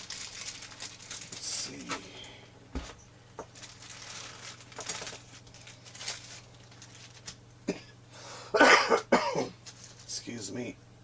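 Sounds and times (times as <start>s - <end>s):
plastic and cardboard rustling: 0.0s - 2.1s, 2.7s - 7.4s, 9.6s - 10.1s.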